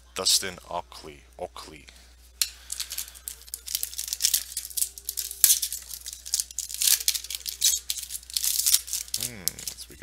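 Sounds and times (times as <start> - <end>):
foil wrapper tearing and crinkling: 2.7 - 10.0.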